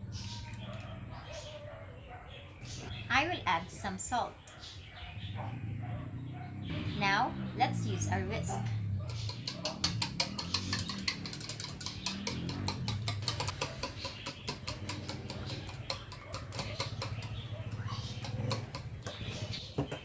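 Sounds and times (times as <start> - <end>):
whisk beating eggs in a bowl: 9.3 - 17.4.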